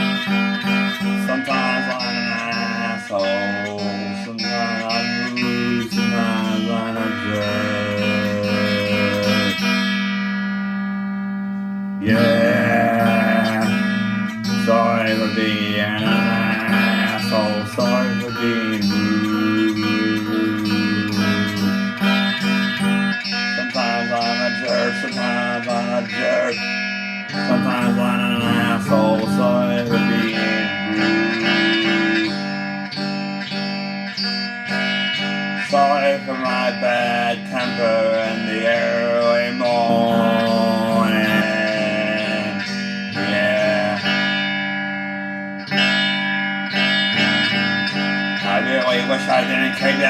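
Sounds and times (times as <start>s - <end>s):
sliding guitar melody: 0.0s - 50.0s
held bass note: 11.4s - 23.8s, 27.4s - 32.5s.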